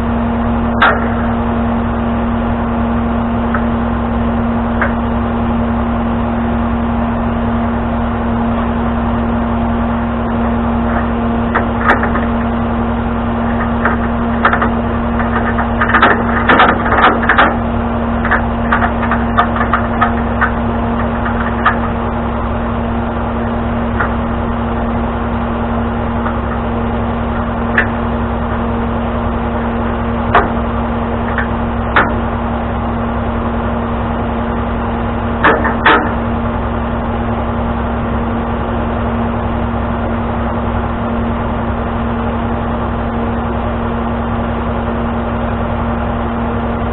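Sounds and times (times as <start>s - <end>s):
truck engine humming: 0.0s - 46.9s
metallic clanks and knocks: 0.8s - 1.3s, 10.9s - 12.5s, 13.4s - 17.6s, 18.2s - 22.0s, 23.9s - 24.2s, 27.3s - 28.6s, 30.3s - 30.6s, 31.2s - 32.3s, 35.4s - 36.3s.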